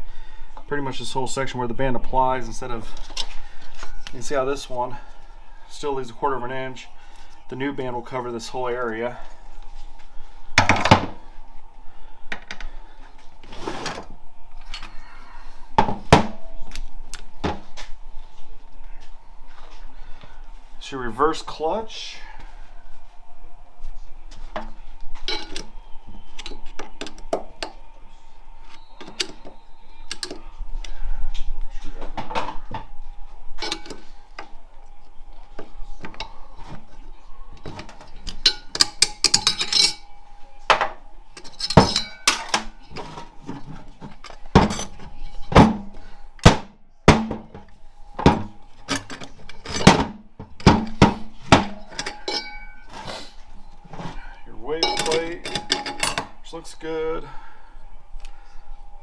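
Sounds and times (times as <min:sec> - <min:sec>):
metal parts clinking and knocking: 0:25.3 - 0:25.7, 0:33.6 - 0:34.0, 0:37.6 - 0:40.1, 0:41.4 - 0:45.7, 0:48.8 - 0:52.9, 0:54.8 - 0:56.3.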